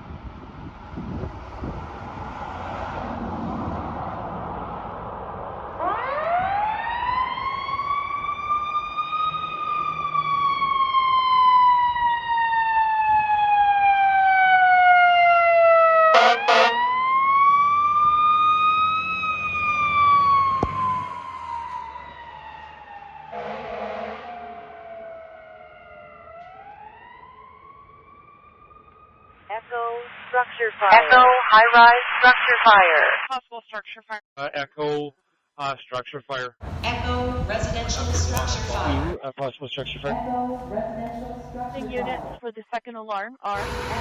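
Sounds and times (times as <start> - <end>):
truck engine and road noise: 0.0 - 13.8, 16.1 - 29.9, 36.6 - 39.2, 39.8 - 42.4, 43.6 - 44.0
fire engine siren wailing: 0.9 - 29.5, 36.6 - 39.2, 43.6 - 44.0
air horn blasts: 16.1 - 16.9, 23.3 - 24.6, 43.6 - 44.0.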